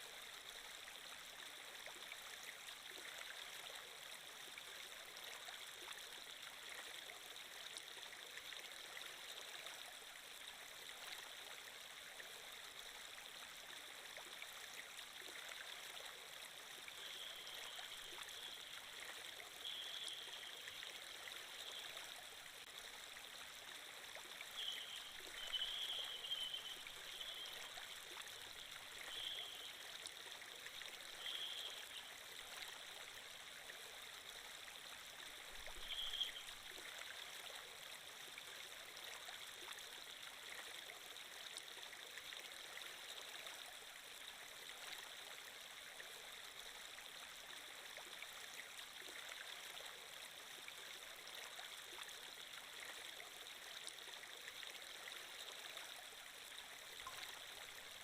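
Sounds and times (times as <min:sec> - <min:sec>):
water gurgling: 0:00.0 - 0:41.8
stream water flowing: 0:00.0 - 0:58.0.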